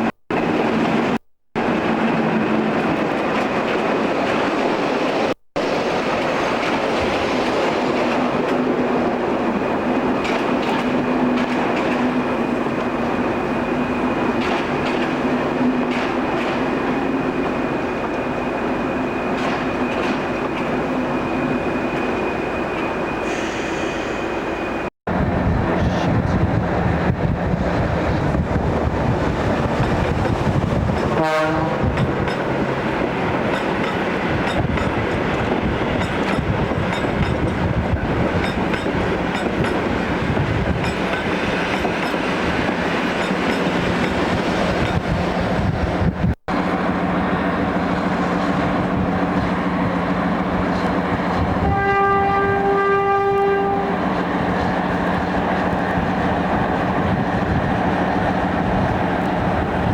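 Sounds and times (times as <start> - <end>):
locomotive horn: 31.0 - 32.2, 51.4 - 54.0.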